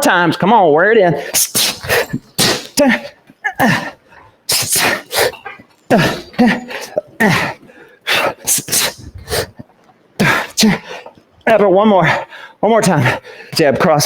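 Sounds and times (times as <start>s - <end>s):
man hissing exhales and grunts: 1.3s - 2.9s, 3.6s - 9.5s.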